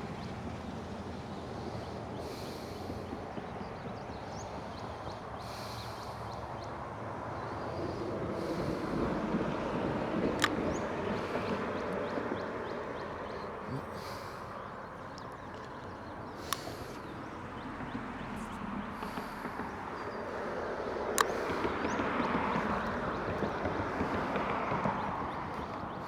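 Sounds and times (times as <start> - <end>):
vehicle passing: 0.0 - 26.0.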